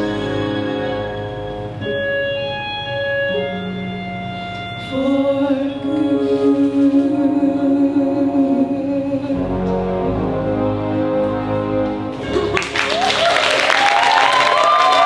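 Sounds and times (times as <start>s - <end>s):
keyboard accompaniment: 0.0s - 14.2s
two singers in harmony: 4.8s - 11.8s.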